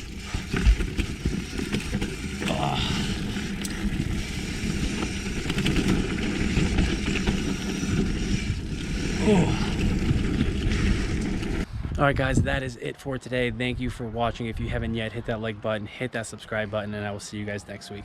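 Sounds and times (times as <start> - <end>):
bike clattering over bumps: 0.0 - 11.6
tyre roar on dirt: 0.0 - 11.7.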